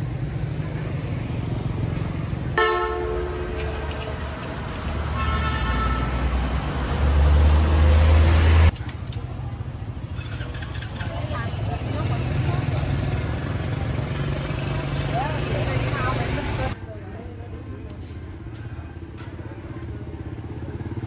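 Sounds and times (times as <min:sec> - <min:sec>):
vehicle horn tooting: 0:02.6 - 0:03.6, 0:05.1 - 0:06.3.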